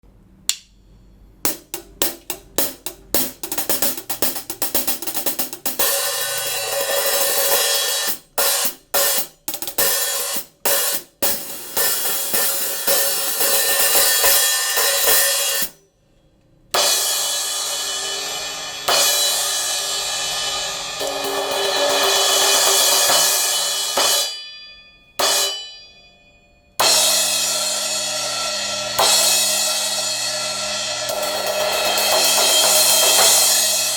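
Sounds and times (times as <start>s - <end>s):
hi-hat strokes: 0.8s - 15.8s
cymbals ringing: 16.9s - 33.9s.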